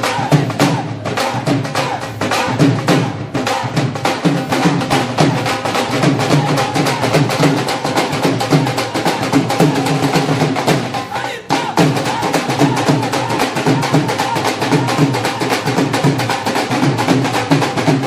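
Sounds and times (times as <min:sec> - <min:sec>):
music with driving percussion beat: 0:00.0 - 0:18.0.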